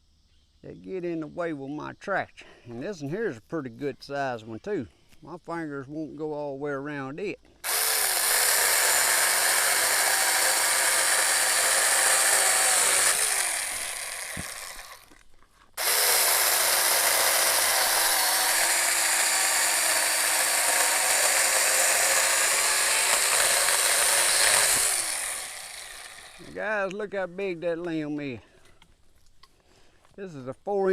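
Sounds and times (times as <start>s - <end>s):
mini chainsaw cutting wood: 7.6s - 15.2s, 15.8s - 26.6s.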